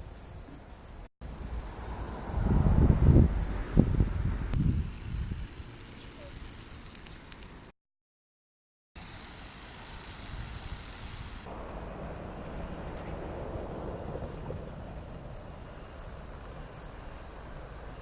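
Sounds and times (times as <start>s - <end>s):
crickets chirping: 0.0s - 2.6s, 9.0s - 18.0s.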